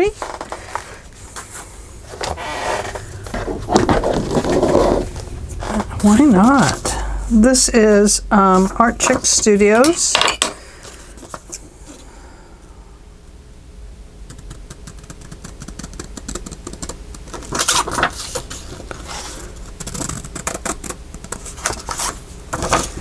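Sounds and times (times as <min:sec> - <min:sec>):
paper rustling: 0:00.1 - 0:06.8, 0:08.6 - 0:10.2, 0:15.0 - 0:23.0.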